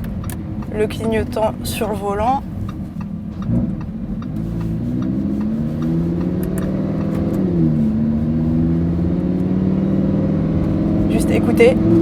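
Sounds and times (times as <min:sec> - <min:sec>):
car engine accelerating: 0:00.0 - 0:12.0.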